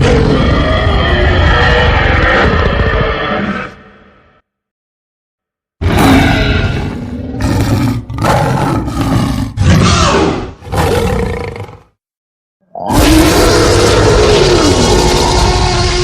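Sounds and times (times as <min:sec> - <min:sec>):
loud growling creature roars: 0:00.0 - 0:04.0, 0:05.8 - 0:11.9, 0:12.7 - 0:16.0.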